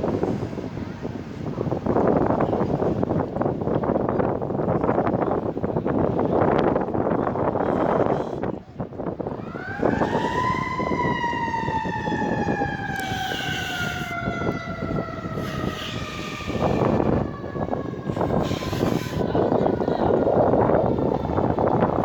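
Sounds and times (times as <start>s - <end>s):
fire engine siren wailing: 0.0s - 3.4s, 9.2s - 22.0s.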